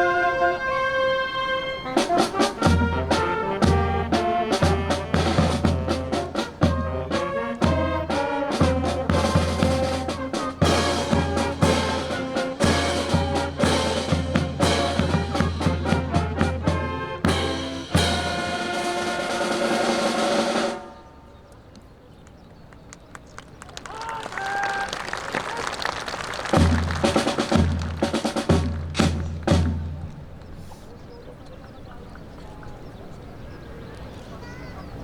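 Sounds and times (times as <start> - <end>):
upbeat brass and drum music: 0.0 - 21.2, 26.1 - 30.3.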